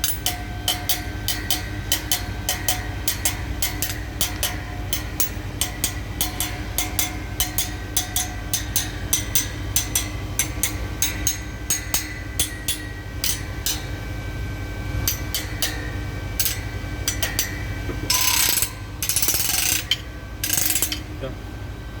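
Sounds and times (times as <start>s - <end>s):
metal vanes clicking: 0.0s - 13.9s, 15.0s - 21.1s
low machinery hum: 0.0s - 22.0s.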